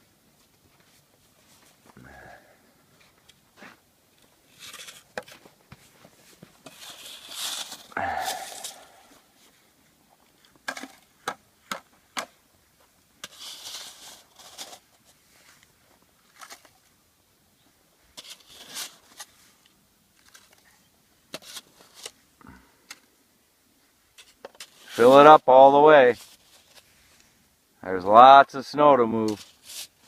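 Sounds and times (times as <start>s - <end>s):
snow crunching and scraping: 3.0s - 11.2s, 12.8s - 16.8s, 24.6s - 27.4s.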